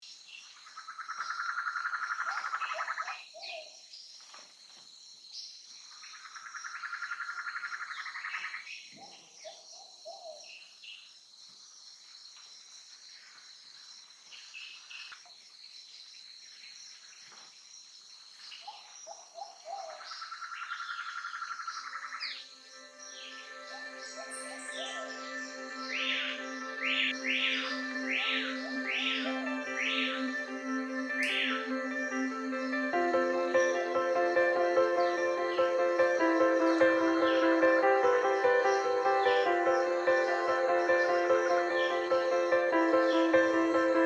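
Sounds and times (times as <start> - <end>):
high insect chorus: 0.0 - 44.0
low hooting notes: 22.6 - 44.0.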